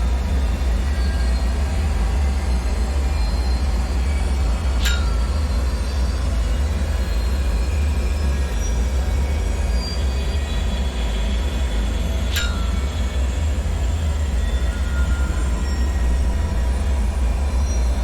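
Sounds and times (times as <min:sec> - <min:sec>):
faint high ringing tones: 0:00.2 - 0:18.0
sharp ping: 0:04.8 - 0:05.4, 0:12.3 - 0:13.4, 0:14.2 - 0:18.0
deep rumble: 0:12.6 - 0:18.0.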